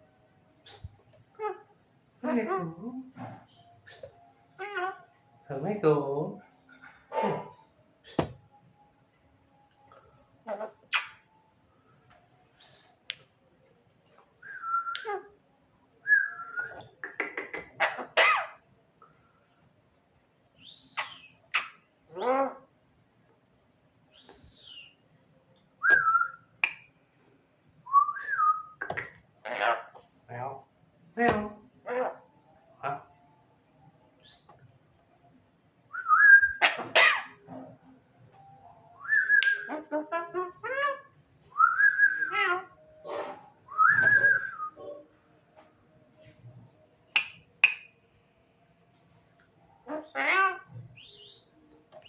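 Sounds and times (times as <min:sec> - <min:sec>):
bird whistling: 0:14.4 - 0:15.0, 0:16.0 - 0:16.9, 0:20.6 - 0:21.7, 0:24.1 - 0:25.0, 0:25.8 - 0:26.4, 0:27.9 - 0:28.8, 0:35.9 - 0:37.2, 0:39.0 - 0:39.7, 0:41.5 - 0:42.5, 0:43.7 - 0:44.8, 0:50.9 - 0:51.6.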